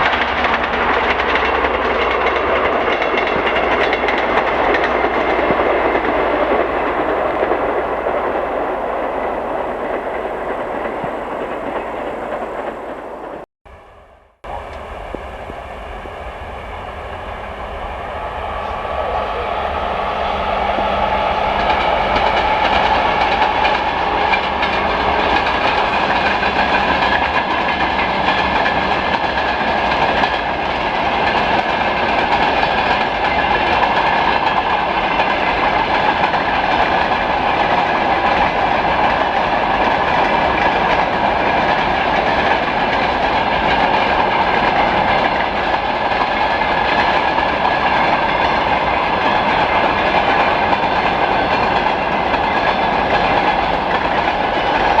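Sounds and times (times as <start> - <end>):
train wheels clattering over rails: 0.0 - 13.5, 19.8 - 55.0
locomotive low hum: 0.0 - 30.7.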